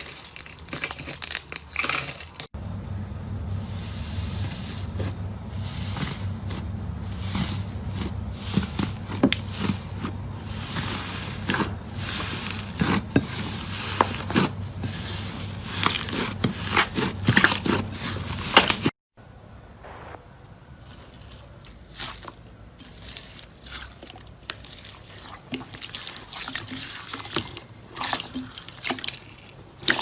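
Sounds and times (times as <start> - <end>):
low steady hum: 2.6 - 18.4, 19.2 - 21.6.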